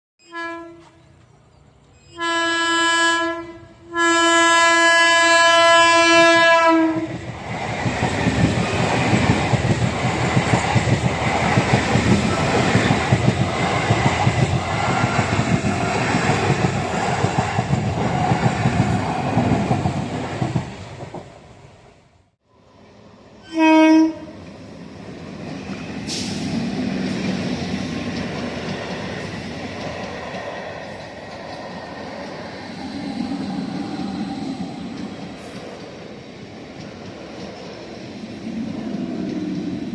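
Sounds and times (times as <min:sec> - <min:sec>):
train horn blasts: 0:00.2 - 0:01.2, 0:02.1 - 0:07.2, 0:23.4 - 0:24.4
train rumbling past: 0:00.4 - 0:39.9.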